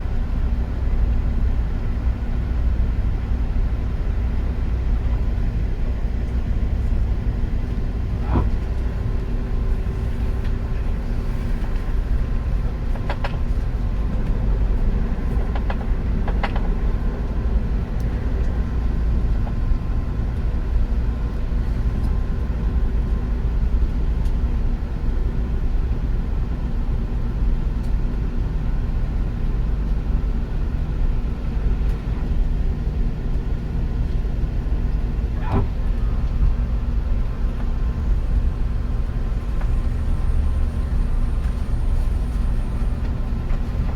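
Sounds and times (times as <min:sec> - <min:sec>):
train rumbling: 0:00.0 - 0:43.9.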